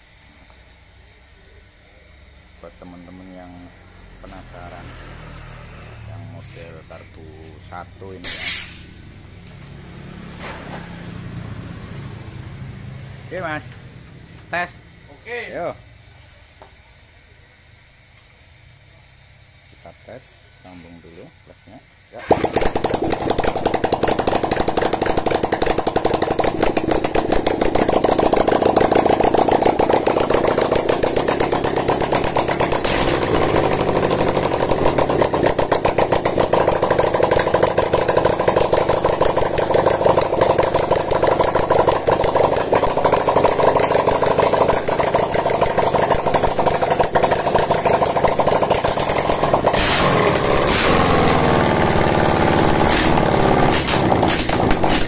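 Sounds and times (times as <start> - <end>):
v-twin engine running: 22.3 - 55.0.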